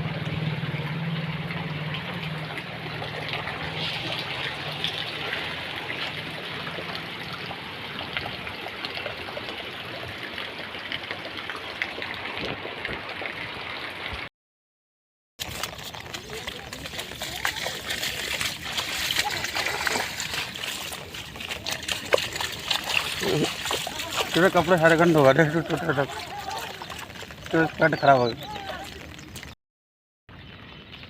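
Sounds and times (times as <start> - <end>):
floodwater running over street: 0.0 - 14.3, 15.4 - 29.6
rain falling: 0.1 - 13.4, 15.4 - 29.6.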